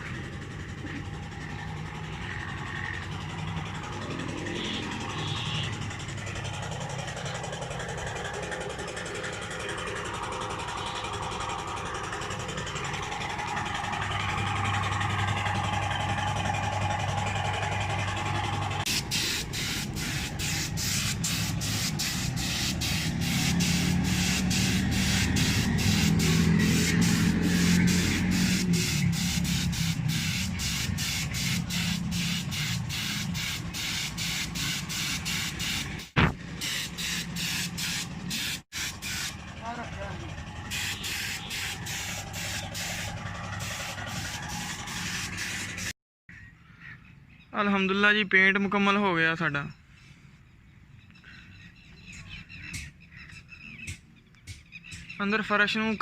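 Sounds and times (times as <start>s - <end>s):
motor humming: 0.0s - 45.9s
paint spray gun hissing: 18.8s - 39.4s, 40.7s - 45.9s.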